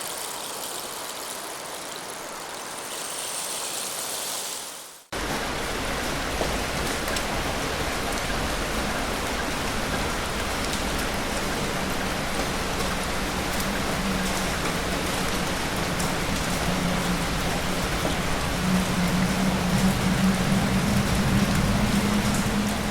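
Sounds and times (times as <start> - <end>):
rain falling: 0.0 - 22.9.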